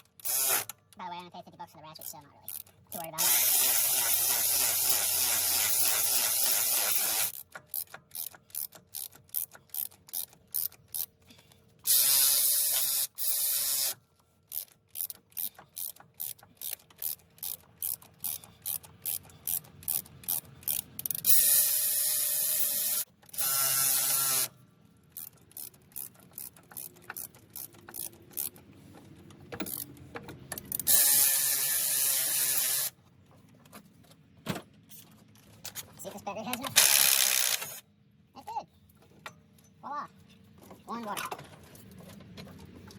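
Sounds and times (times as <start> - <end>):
ratchet wrench clicking: 0.0 - 0.8, 2.0 - 11.1, 11.8 - 24.5, 25.1 - 33.0, 36.6 - 37.8.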